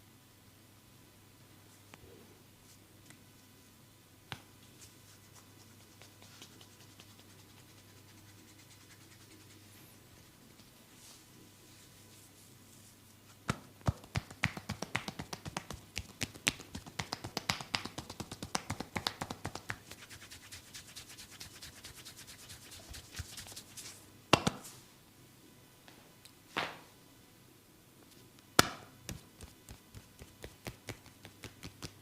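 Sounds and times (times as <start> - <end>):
hands tapping and slapping skin: 13.4 - 20.3, 24.3 - 24.6, 28.5 - 32.0.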